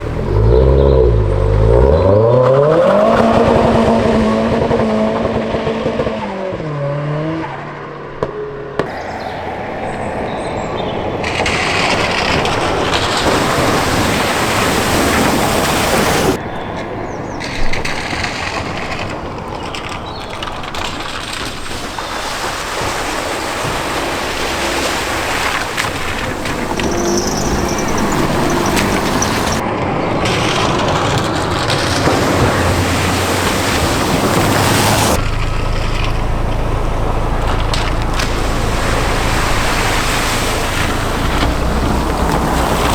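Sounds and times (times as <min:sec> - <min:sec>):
water splashing: 0:00.0 - 0:05.1, 0:08.3 - 0:42.9
continuous water noise: 0:00.0 - 0:05.8, 0:08.0 - 0:42.9
car engine revving: 0:00.0 - 0:42.9.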